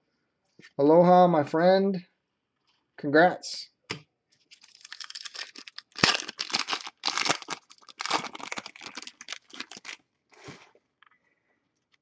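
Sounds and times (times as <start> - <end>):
wrapper crinkling and tearing: 4.5 - 10.0.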